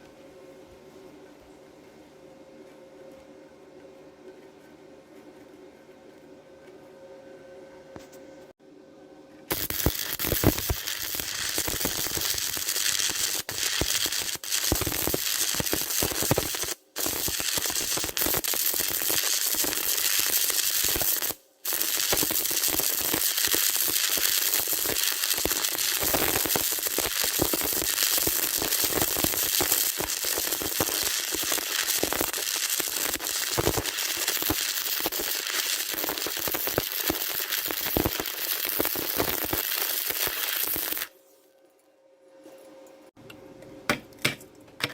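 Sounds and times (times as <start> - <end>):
welding arc crackling: 9.5 - 41.1.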